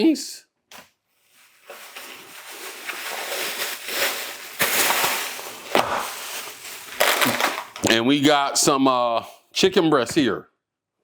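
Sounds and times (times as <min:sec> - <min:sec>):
bag crinkling and rustling: 0:01.2 - 0:08.0.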